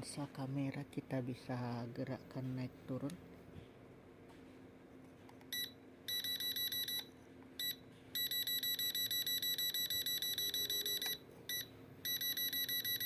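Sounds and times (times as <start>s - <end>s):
rapid electronic beeping: 7.6s - 13.0s.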